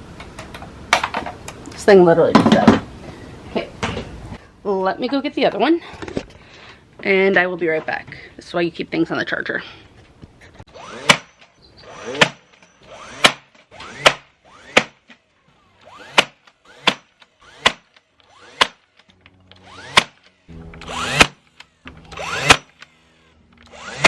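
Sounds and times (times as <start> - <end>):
cordless drill driving screws: 10.7 - 14.8, 15.7 - 24.0.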